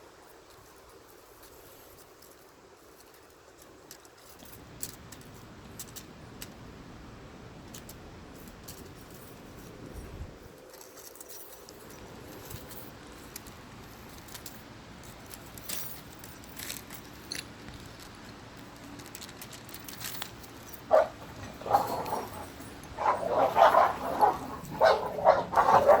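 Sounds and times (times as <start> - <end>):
dog barking: 20.9 - 26.0.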